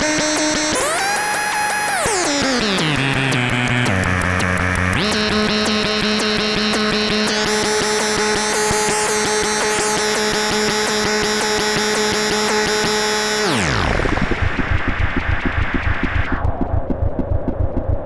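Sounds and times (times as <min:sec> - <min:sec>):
fast ticking texture: 0:00.0 - 0:13.4
buzzy synth chord: 0:00.0 - 0:16.8.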